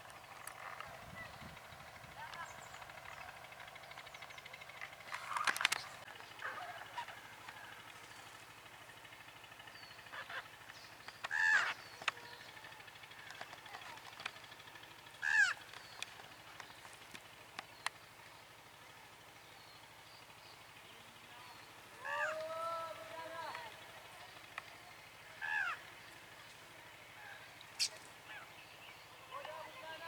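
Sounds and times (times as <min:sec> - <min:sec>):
birds calling: 0:00.0 - 0:30.0
faint bird chirps: 0:27.2 - 0:29.4.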